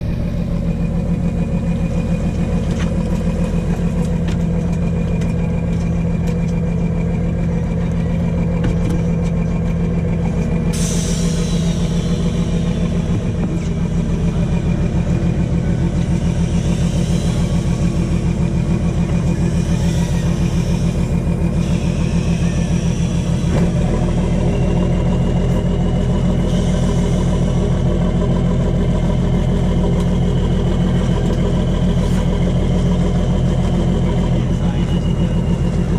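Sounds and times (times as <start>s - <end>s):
boat engine low drone: 0.0s - 35.9s
hiss: 10.7s - 12.8s.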